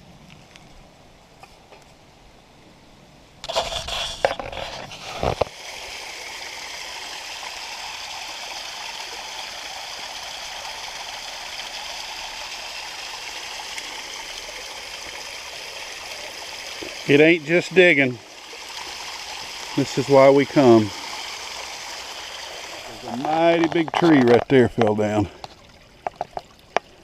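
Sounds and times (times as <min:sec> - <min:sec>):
stream and waterfall rushing: 0:05.4 - 0:23.8.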